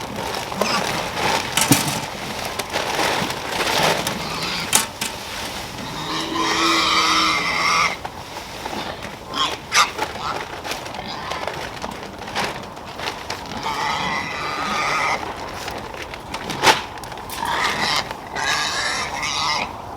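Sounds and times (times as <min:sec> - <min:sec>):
scattered knocks and clatter: 0:01.2 - 0:05.6
farm animal drawn-out cry: 0:03.7 - 0:11.7, 0:13.5 - 0:15.4, 0:17.3 - 0:19.9.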